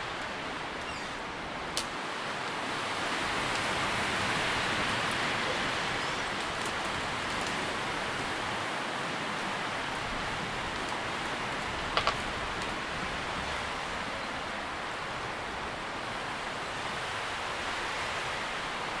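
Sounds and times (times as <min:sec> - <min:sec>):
wind rustling tree leaves: 0:00.0 - 0:19.0.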